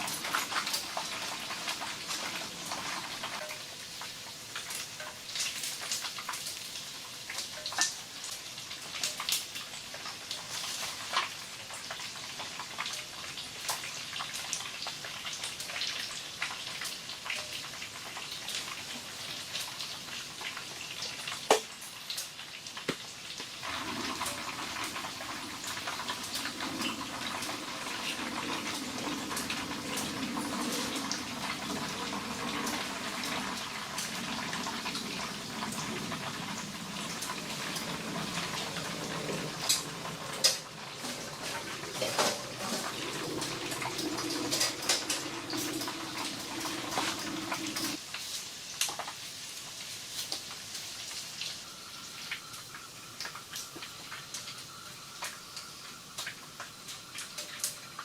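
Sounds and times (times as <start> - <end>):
water running: 0.0 - 3.5, 22.8 - 48.0
water dripping: 20.5 - 48.0, 51.4 - 58.0.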